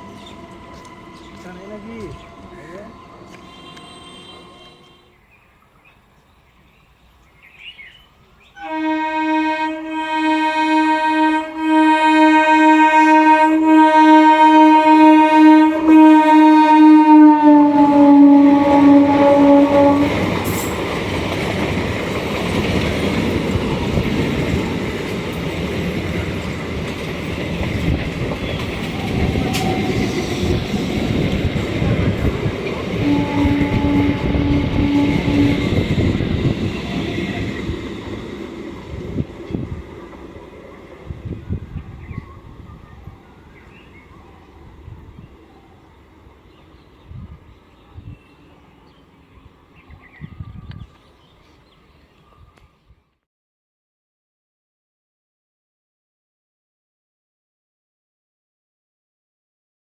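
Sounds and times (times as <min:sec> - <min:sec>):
train wheels rumbling on rails: 0:00.0 - 0:05.0, 0:13.1 - 0:51.2
train horn blast: 0:00.0 - 0:05.2, 0:08.6 - 0:20.7, 0:28.4 - 0:37.7.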